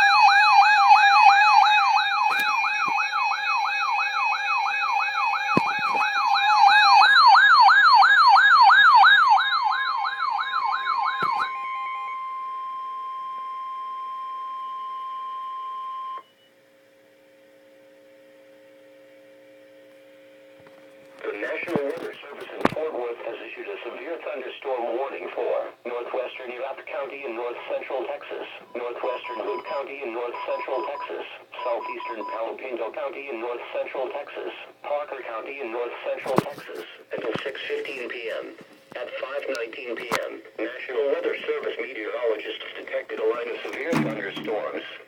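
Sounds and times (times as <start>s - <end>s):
electronic siren wailing: 0.0s - 16.2s.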